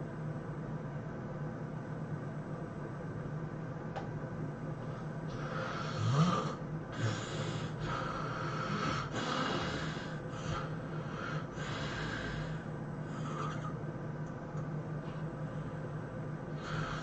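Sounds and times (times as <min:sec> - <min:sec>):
loud snort: 0:05.3 - 0:10.7, 0:11.3 - 0:13.8
person snoring: 0:05.3 - 0:13.8, 0:16.6 - 0:17.0.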